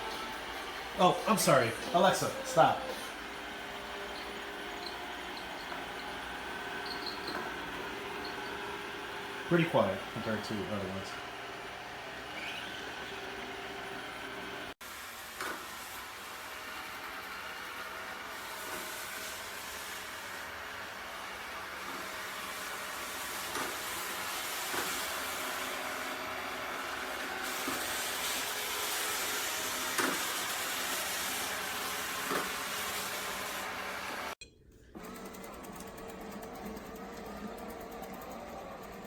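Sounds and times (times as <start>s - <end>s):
robot vacuum whirring: 1.2s - 14.7s.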